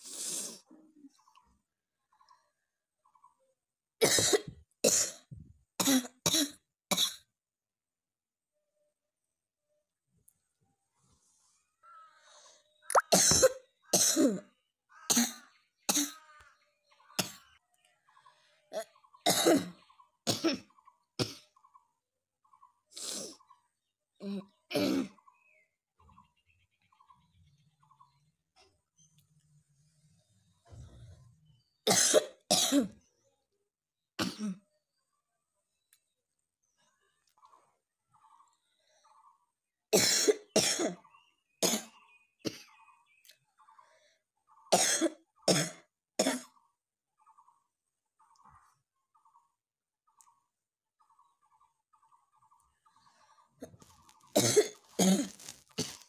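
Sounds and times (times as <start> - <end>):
person coughing: 4.0 - 5.2, 19.3 - 20.6, 31.9 - 32.9, 40.0 - 41.0, 44.8 - 46.5, 54.4 - 56.0.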